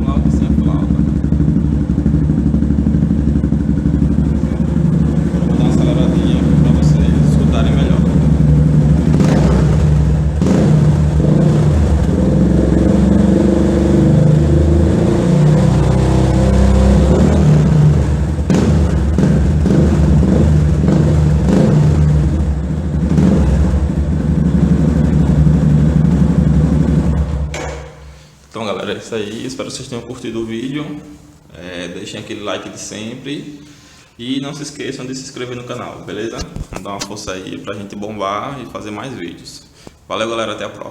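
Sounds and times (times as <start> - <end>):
motorcycle engine revving: 0.0 - 28.3.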